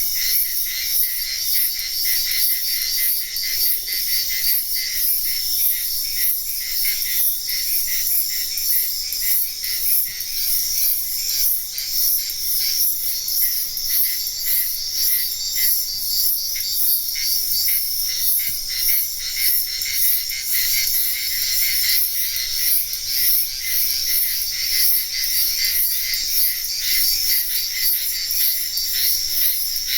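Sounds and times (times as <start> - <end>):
crickets and insects chirping: 0.0 - 29.9.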